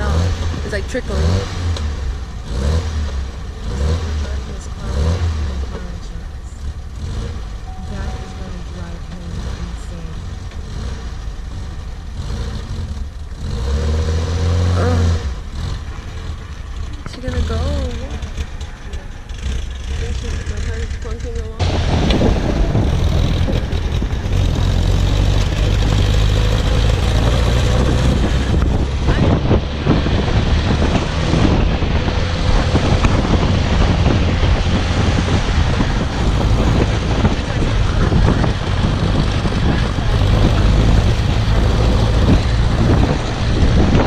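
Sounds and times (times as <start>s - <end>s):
car engine and road rumble: 0.0s - 44.0s
wind buffeting microphone: 16.7s - 44.0s.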